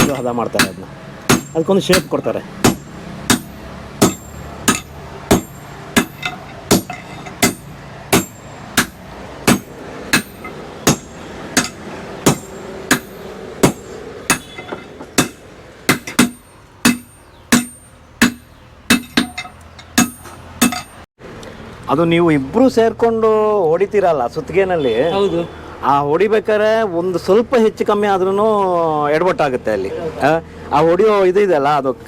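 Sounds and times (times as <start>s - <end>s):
hammers striking iron on anvil: 0.0s - 21.1s.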